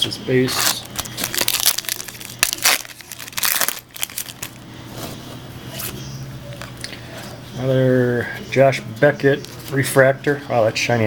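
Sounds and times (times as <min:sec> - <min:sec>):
foil wrappers crinkling: 0:00.5 - 0:05.1.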